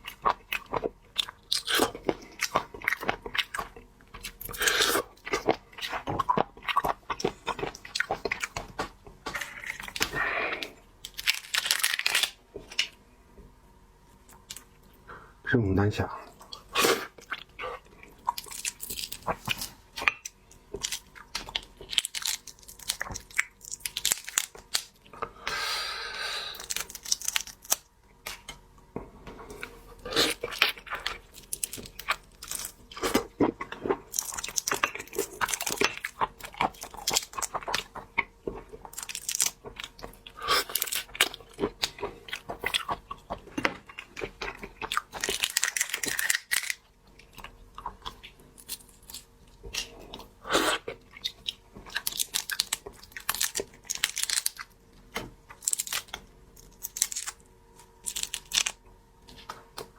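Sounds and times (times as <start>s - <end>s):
shrimp shells crackling and tearing: 11.0s - 12.9s, 18.3s - 25.0s, 26.6s - 28.4s, 30.2s - 33.3s, 38.8s - 40.0s, 44.9s - 46.9s, 51.9s - 54.8s, 55.5s - 59.4s
wet biting and chewing: 26.5s - 28.6s, 29.6s - 59.9s.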